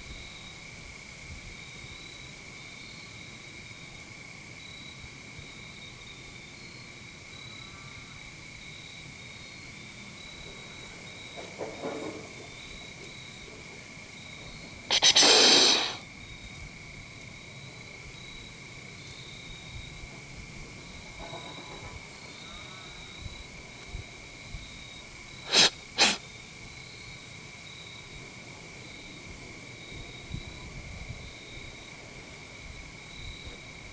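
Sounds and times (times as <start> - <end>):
crickets chirping: 0.0 - 33.9
deer short sharp snorts: 14.9 - 16.0, 25.5 - 26.2
deer snort-wheeze hiss: 14.9 - 16.0, 25.4 - 26.2.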